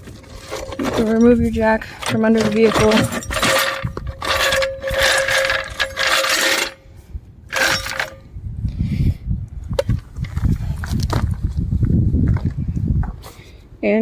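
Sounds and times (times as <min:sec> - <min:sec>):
floor jack scraping and rattling: 0:00.0 - 0:06.8, 0:07.5 - 0:08.2.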